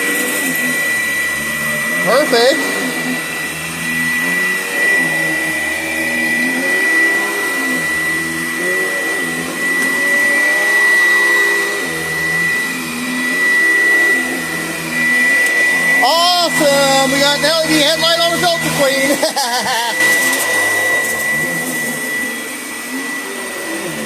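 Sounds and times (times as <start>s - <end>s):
vacuum cleaner running: 0.0s - 24.0s
person speaking: 2.0s - 3.6s, 15.9s - 20.3s.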